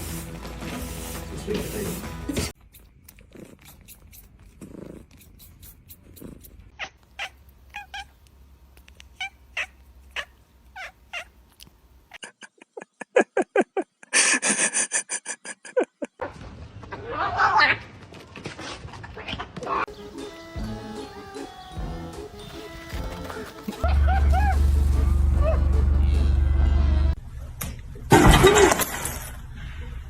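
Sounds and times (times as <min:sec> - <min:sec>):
cat calling and yowling: 0:06.2 - 0:08.2, 0:09.1 - 0:11.3.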